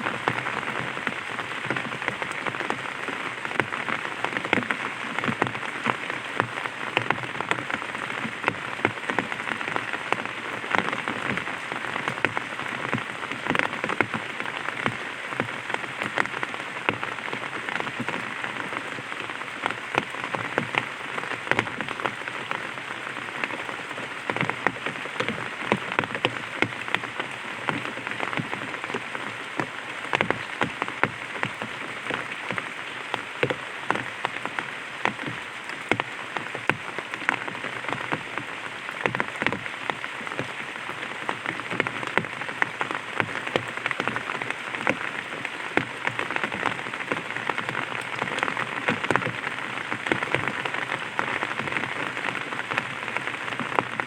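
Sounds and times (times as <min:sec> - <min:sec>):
rain pattering on umbrella: 0:00.0 - 0:54.0.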